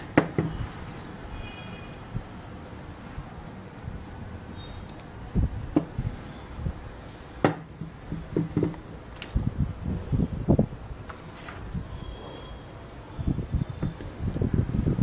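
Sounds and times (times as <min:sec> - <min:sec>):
hard objects knocking and clattering: 0:00.0 - 0:00.6, 0:05.7 - 0:06.1, 0:07.4 - 0:09.0.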